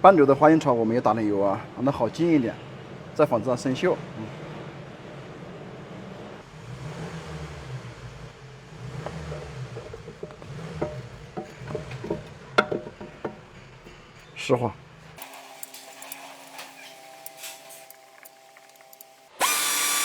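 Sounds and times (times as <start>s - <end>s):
sharp knocks: 9.0s - 13.5s.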